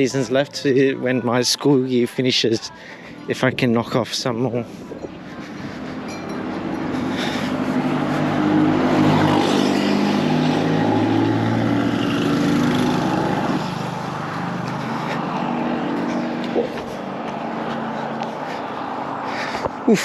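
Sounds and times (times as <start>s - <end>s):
vehicle engine running: 4.6s - 20.0s.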